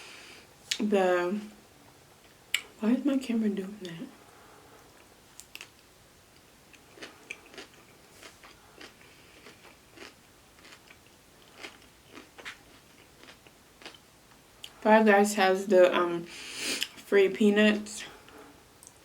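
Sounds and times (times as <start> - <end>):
chewing food crunches: 4.8 - 14.0.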